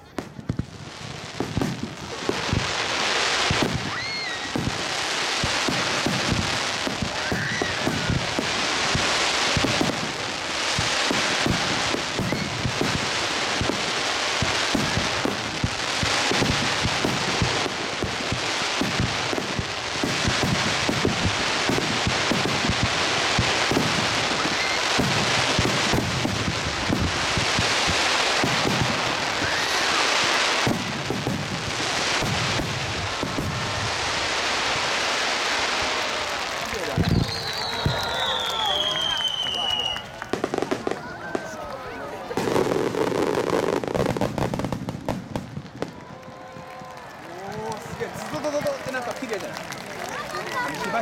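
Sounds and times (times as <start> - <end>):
deep fireworks booms: 0.0 - 51.0
fireworks bangs and crackling pops: 0.0 - 51.0
whistles of rising shells: 36.9 - 40.2.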